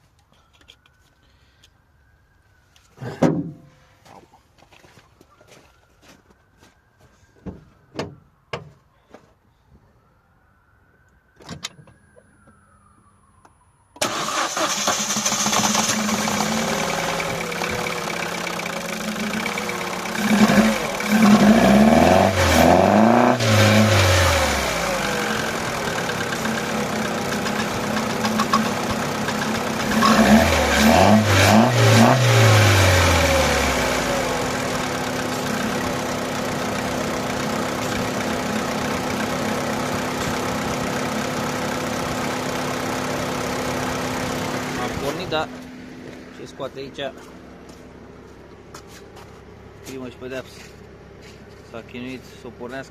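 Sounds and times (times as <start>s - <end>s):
car engine starting and idling: 14.0s - 52.9s.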